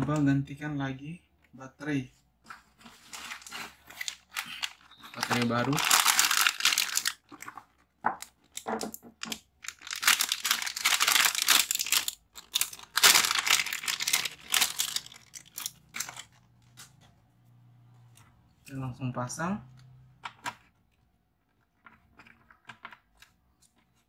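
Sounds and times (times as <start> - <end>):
plastic packaging crinkling: 2.8 - 16.8.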